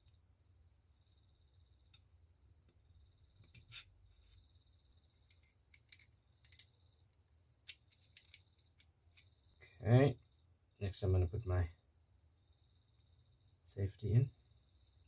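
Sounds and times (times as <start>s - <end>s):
small metal parts clicking: 5.1s - 9.3s.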